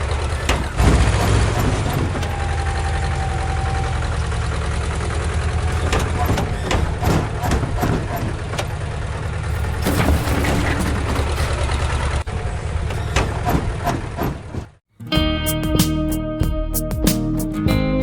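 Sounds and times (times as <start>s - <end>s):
low engine sound: 0.0s - 14.2s
clicks and clatters: 5.6s - 12.3s
strummed guitar music: 15.0s - 18.0s.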